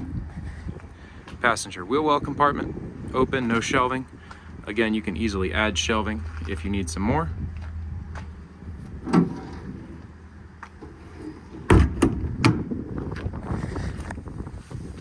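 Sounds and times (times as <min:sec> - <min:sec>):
metal door slamming shut: 0:09.0 - 0:10.0, 0:10.9 - 0:12.7.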